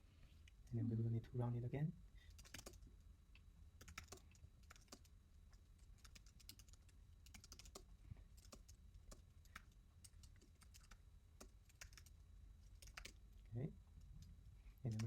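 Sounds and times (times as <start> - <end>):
low steady hum: 0.0 - 15.0
keyboard typing: 2.3 - 2.9, 3.8 - 13.2.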